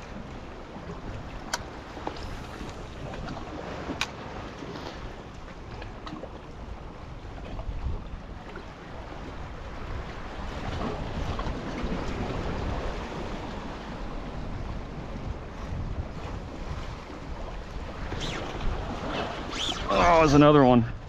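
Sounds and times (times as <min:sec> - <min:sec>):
wind rumbling on microphone: 0:00.0 - 0:21.0
ocean surf washing ashore: 0:08.6 - 0:21.0.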